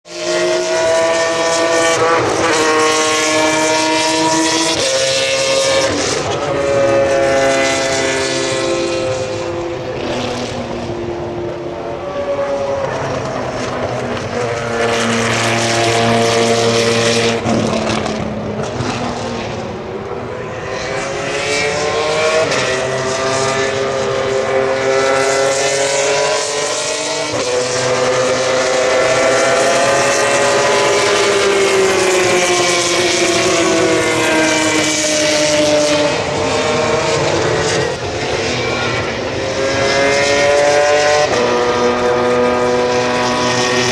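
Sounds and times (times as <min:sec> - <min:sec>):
racing car engines passing: 0:00.1 - 0:43.9.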